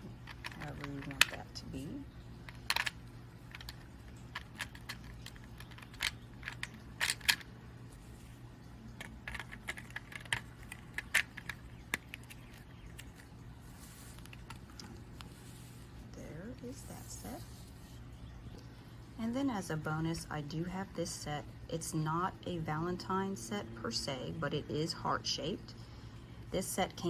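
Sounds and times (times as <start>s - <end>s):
faint low hum: 0.0s - 27.0s
plastic pieces clicking: 2.5s - 7.5s, 9.0s - 13.2s.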